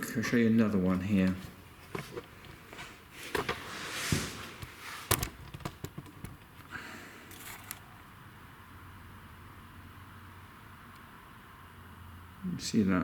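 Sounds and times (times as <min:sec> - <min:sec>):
short rustle: 0:01.4 - 0:05.2
handling knocks and clicks: 0:04.6 - 0:06.7.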